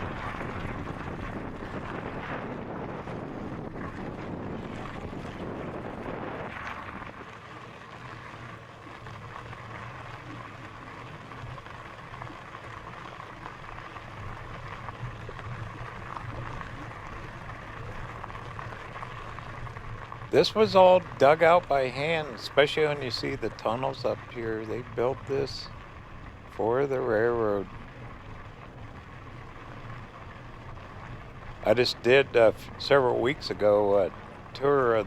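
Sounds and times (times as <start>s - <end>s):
wind buffeting microphone: 0.0s - 9.4s
faint steady whine: 0.0s - 35.0s.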